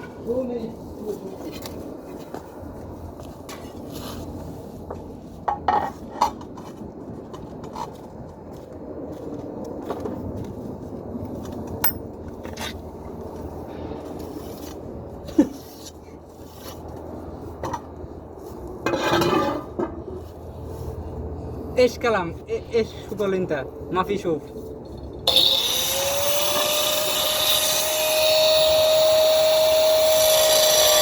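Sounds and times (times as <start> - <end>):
sharp clinks and knocks: 11.8 - 12.1.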